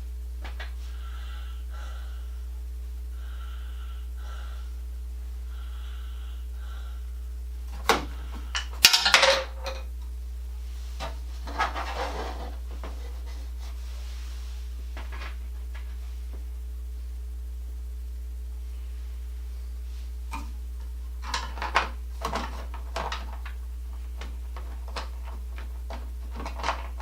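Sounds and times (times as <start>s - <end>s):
steady low hum: 0.0s - 27.0s
bike parts clicking and clattering: 7.8s - 9.9s.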